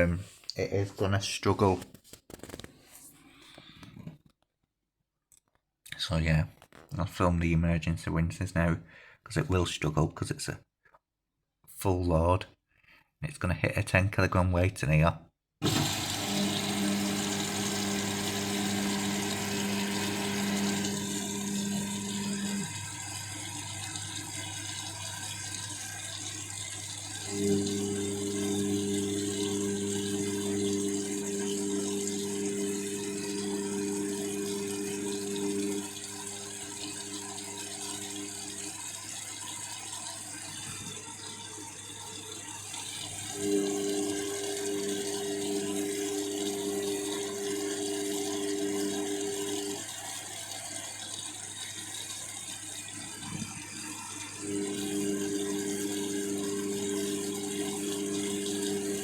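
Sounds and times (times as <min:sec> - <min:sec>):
washing machine humming: 0:15.6 - 0:59.0
washing machine water rushing: 0:15.6 - 0:59.0.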